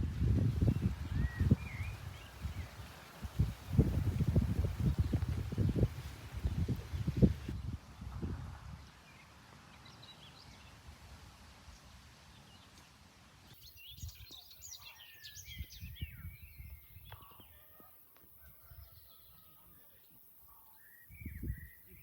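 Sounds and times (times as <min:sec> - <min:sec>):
wind rumble on microphone: 0:00.0 - 0:09.2, 0:13.9 - 0:14.4, 0:15.4 - 0:17.5, 0:21.1 - 0:22.0
small birds chirping: 0:00.4 - 0:11.0, 0:11.6 - 0:22.0.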